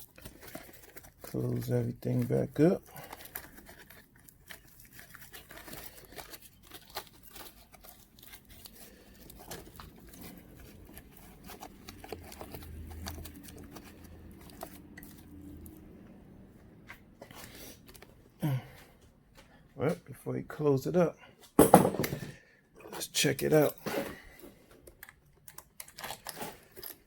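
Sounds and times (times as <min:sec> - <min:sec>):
crinkling rustle of hands: 0:00.0 - 0:20.4.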